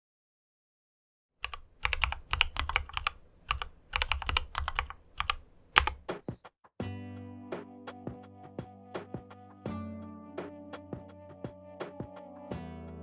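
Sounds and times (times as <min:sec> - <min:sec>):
mechanical keyboard typing: 0:01.4 - 0:06.1.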